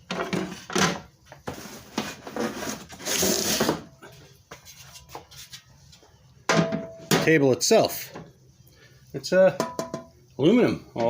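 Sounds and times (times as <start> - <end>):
rustling scrape of packing: 1.4 - 3.9.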